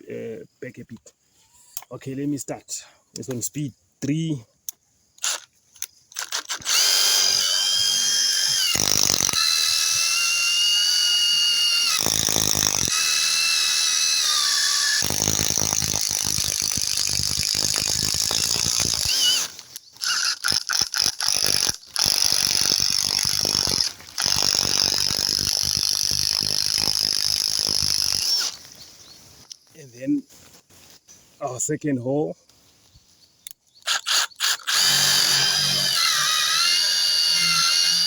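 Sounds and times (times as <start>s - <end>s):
impact driver motor whining: 6.2s - 28.6s, 33.9s - 38.0s.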